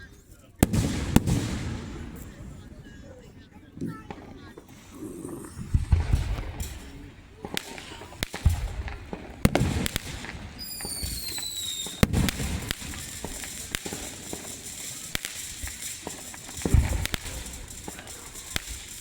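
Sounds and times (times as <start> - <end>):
whistling firework: 0.0 - 3.2, 5.6 - 19.0
fireworks cracking and booming: 0.0 - 19.0
loud firework bang: 5.6 - 19.0.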